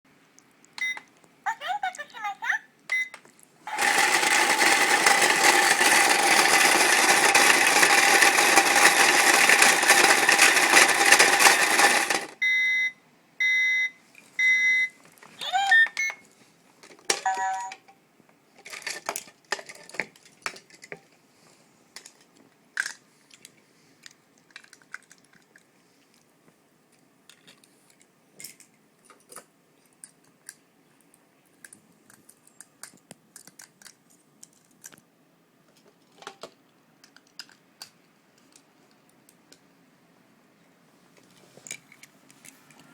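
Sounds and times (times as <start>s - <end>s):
toy washing machine running: 3.7s - 12.4s
short beeps: 12.4s - 15.0s.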